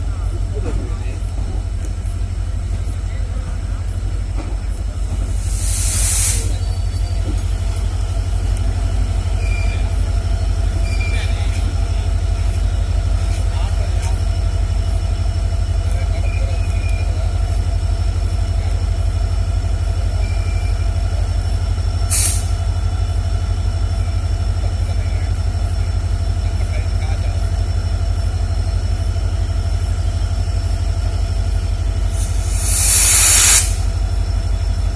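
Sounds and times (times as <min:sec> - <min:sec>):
diesel locomotives idling: 0:00.0 - 0:34.9
air hiss: 0:05.2 - 0:07.0, 0:22.1 - 0:22.6, 0:32.0 - 0:34.0.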